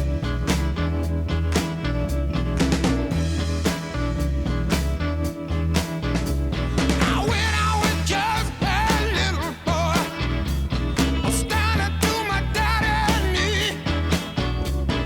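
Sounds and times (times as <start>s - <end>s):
regular drum beat: 0.0s - 15.0s
steady bass line: 0.0s - 15.0s
person singing with vibrato: 7.0s - 10.6s, 11.3s - 14.4s.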